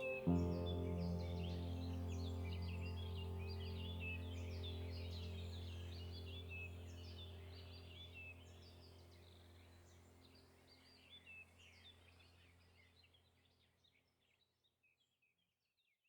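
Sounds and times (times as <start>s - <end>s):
songbirds chirping: 0.0s - 11.9s.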